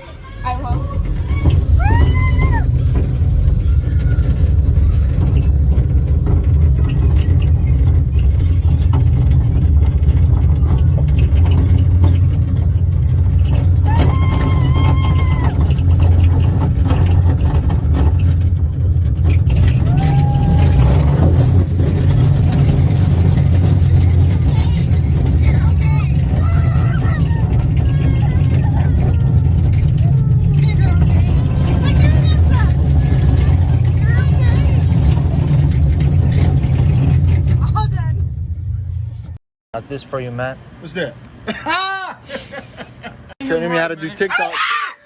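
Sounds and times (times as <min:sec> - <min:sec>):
high cry rising and falling: 0:00.0 - 0:06.2, 0:13.8 - 0:15.8
low motor rumble: 0:00.0 - 0:42.1.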